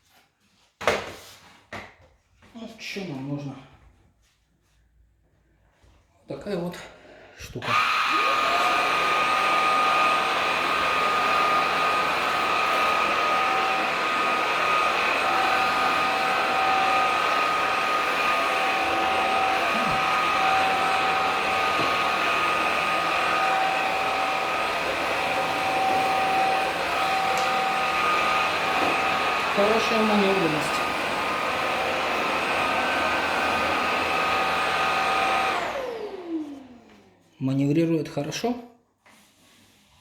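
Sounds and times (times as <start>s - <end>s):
stick vacuum motor whine: 7.6s - 37.2s.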